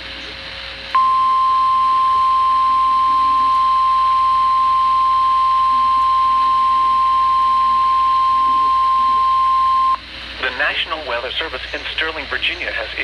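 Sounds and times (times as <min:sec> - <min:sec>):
loud steady alarm tone: 0:00.9 - 0:10.0.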